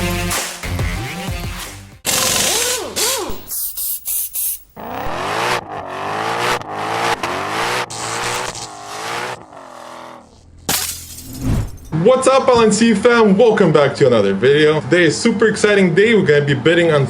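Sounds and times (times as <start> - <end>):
car engine revving: 2.1 - 3.5, 4.8 - 11.8.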